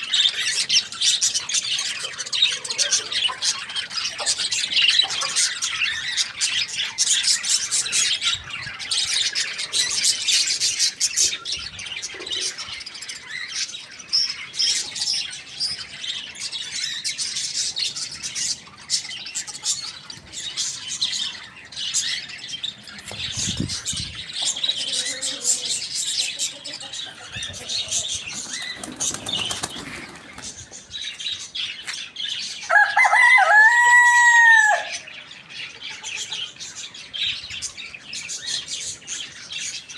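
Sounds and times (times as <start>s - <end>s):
small birds chirping: 0.0s - 33.5s, 34.1s - 39.9s
rooster crowing: 32.7s - 35.1s.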